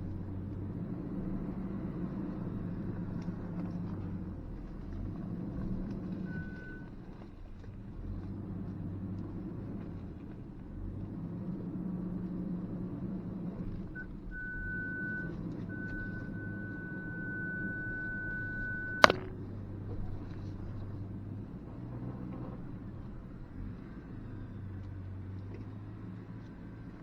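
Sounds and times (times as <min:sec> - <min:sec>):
engine rumbling low: 0:00.0 - 0:27.0
parking sensor beeps: 0:06.3 - 0:06.9, 0:14.0 - 0:19.1
sharp knock: 0:19.0 - 0:19.4.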